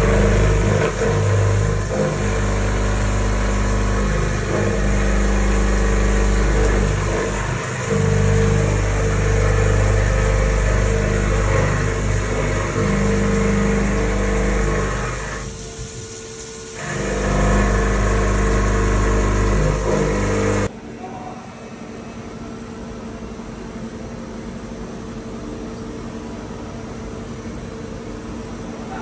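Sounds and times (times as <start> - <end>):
milling machine hum: 0.0 - 20.7.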